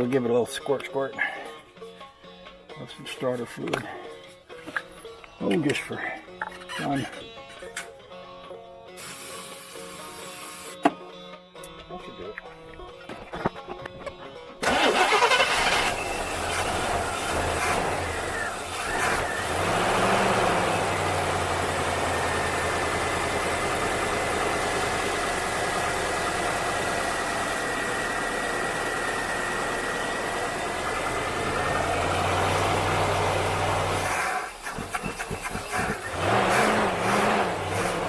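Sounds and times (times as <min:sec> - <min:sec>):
car engine starting and idling: 0:14.6 - 0:38.0.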